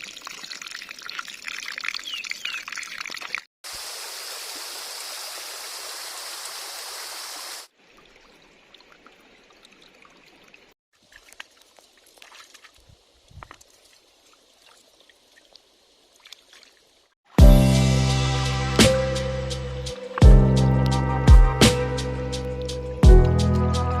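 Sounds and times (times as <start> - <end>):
stream water running: 0.0 - 17.4.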